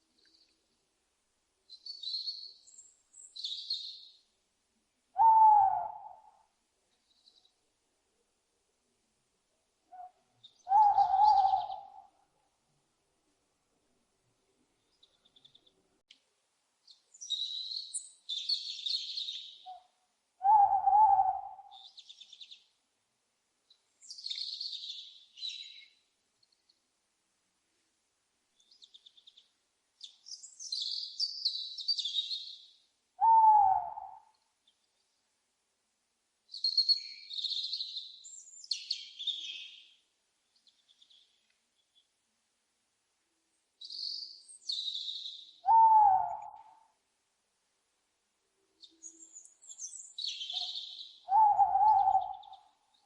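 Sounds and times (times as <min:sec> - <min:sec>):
low falling owl hoots: 0:05.2 - 0:06.5, 0:09.9 - 0:12.2, 0:20.4 - 0:21.9, 0:33.2 - 0:34.3, 0:45.6 - 0:47.0, 0:50.5 - 0:52.8.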